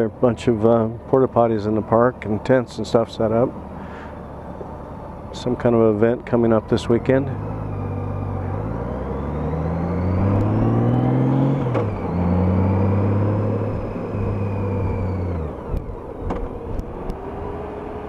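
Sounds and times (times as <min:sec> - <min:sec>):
motorcycle engine revving: 0:06.2 - 0:18.0.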